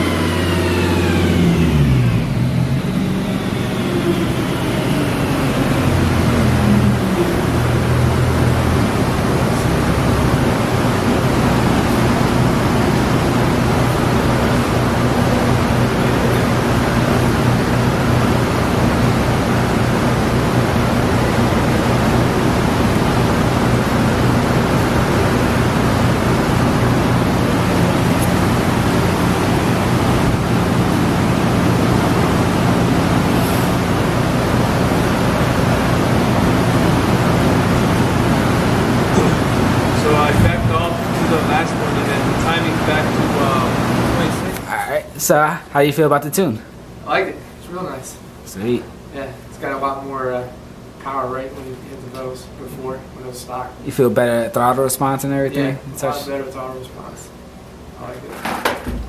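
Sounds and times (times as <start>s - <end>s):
car engine revving: 0.0s - 44.7s
loud steady rushing noise: 0.0s - 45.0s
low droning machine hum: 0.0s - 45.0s.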